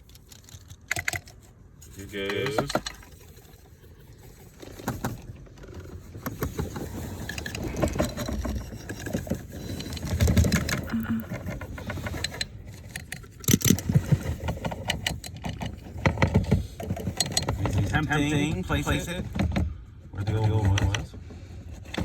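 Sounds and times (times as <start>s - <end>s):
knocking and rattling of blower motor: 4.6s - 22.0s.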